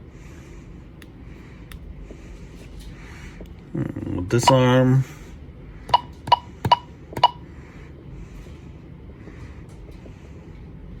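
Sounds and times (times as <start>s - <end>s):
keypad beeps: 4.4s - 4.7s, 5.9s - 7.4s.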